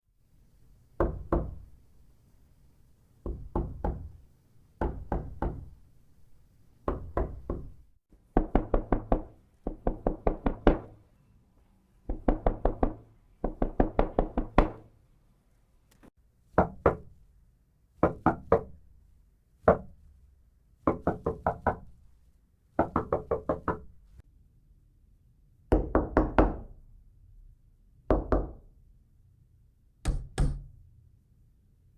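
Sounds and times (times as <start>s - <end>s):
knocking on a wooden door: 1.0s - 1.8s, 3.2s - 4.2s, 4.8s - 5.8s, 6.8s - 7.8s, 8.4s - 11.0s, 12.1s - 14.9s, 16.6s - 17.1s, 18.0s - 18.8s, 20.9s - 21.9s, 22.8s - 23.9s, 28.1s - 28.6s, 30.1s - 30.7s.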